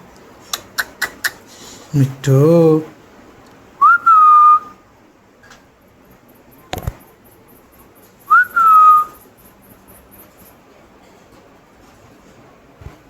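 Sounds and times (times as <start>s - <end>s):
rising then held whistles: 3.8s - 4.8s, 8.3s - 9.2s.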